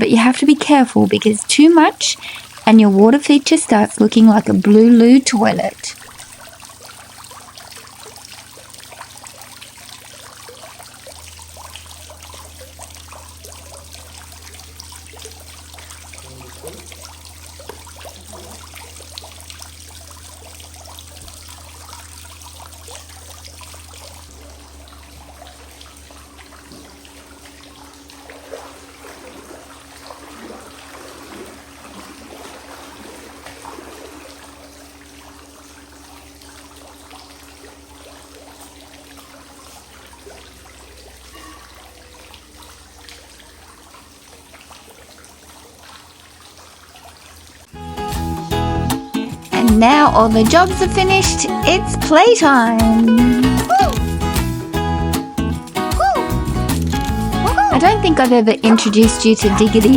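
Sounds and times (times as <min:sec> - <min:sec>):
steady low hum: 0:00.0 - 0:42.4
water trickling and splashing: 0:00.0 - 0:59.9.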